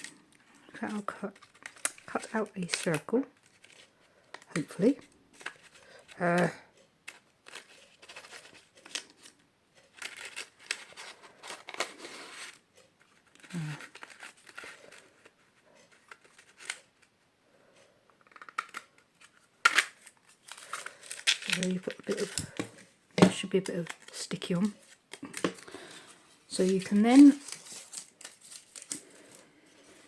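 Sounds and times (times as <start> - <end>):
scissors snipping paper: 0.8 - 9.3.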